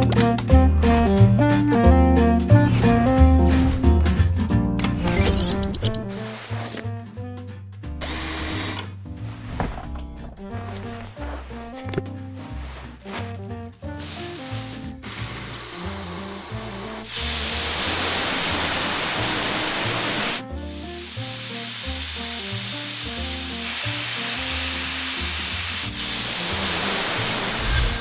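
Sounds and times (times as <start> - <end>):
background music: 0.0 - 28.0
spray jet hissing: 14.0 - 28.0.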